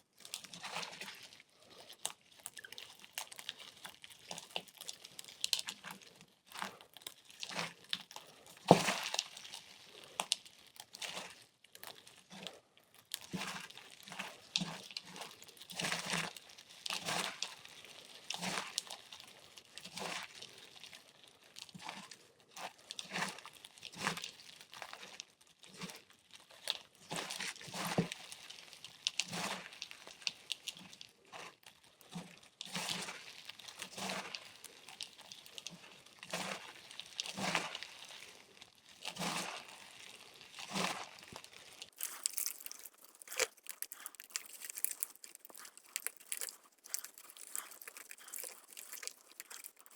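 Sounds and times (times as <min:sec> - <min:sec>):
chalk blocks crunching: 0:40.6 - 0:49.9.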